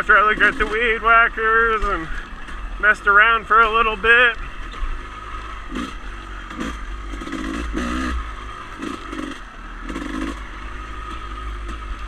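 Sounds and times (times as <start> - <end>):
dirt bike engine rumble: 0.0 - 12.0.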